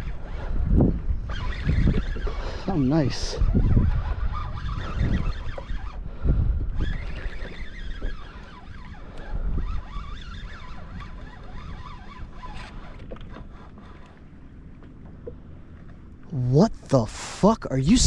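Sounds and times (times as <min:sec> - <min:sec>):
fishing reel drag buzzing: 0:00.0 - 0:14.2
wind rumble on microphone: 0:00.0 - 0:16.0.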